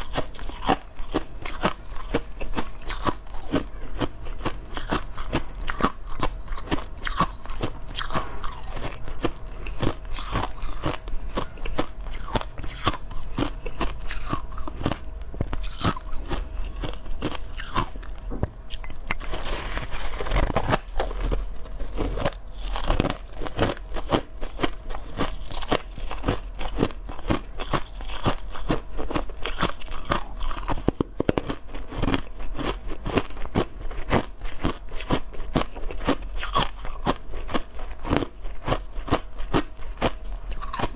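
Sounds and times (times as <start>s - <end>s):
crushed ice crunching: 18.7s - 23.7s.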